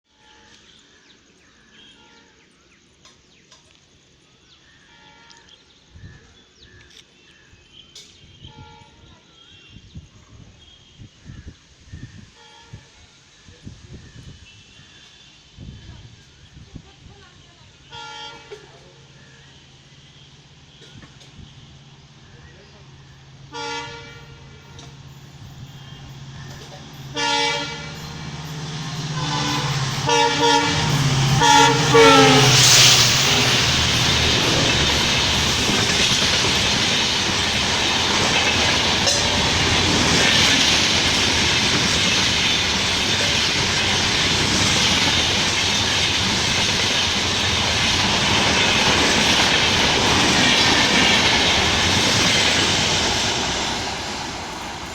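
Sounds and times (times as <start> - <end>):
diesel locomotive engine rumble: 4.2 - 54.9
locomotive horn blast: 17.9 - 18.7, 23.5 - 25.0, 27.1 - 35.8, 38.9 - 39.5.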